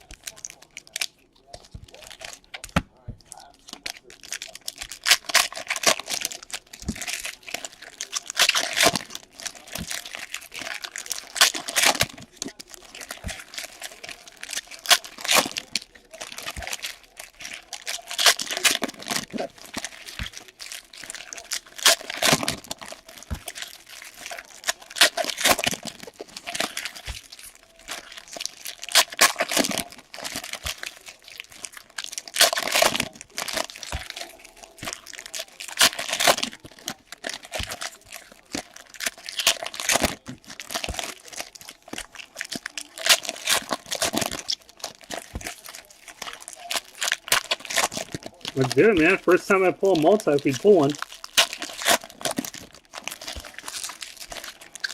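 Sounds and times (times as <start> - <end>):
plastic wrapping crinkling: 0.0 - 54.9
plastic wrapping ripping: 0.0 - 54.9.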